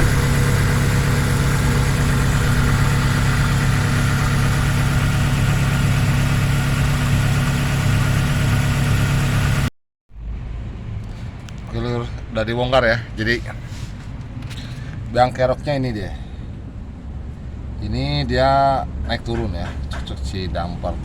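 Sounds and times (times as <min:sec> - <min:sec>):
rough car engine idling: 0:00.0 - 0:09.7.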